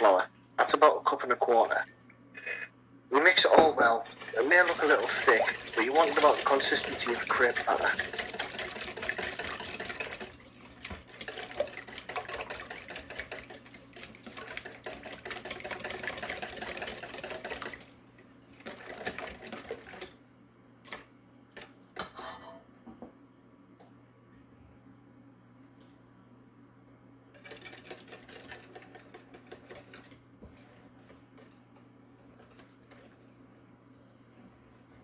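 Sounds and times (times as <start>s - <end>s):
whisk clicking in a bowl: 4.1s - 17.9s, 18.6s - 20.2s, 27.4s - 31.6s.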